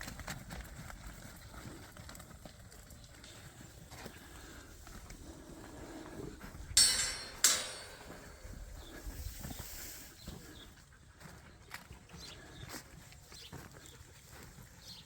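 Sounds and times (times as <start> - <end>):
loud sharp ringing bangs: 6.8 - 8.6.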